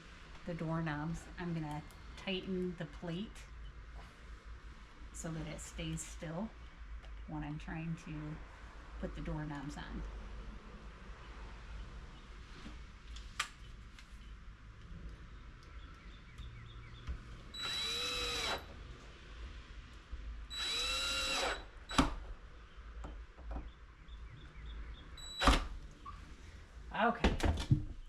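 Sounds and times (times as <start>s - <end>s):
cordless drill driving screws: 17.6s - 18.7s, 20.5s - 22.2s, 25.2s - 25.7s.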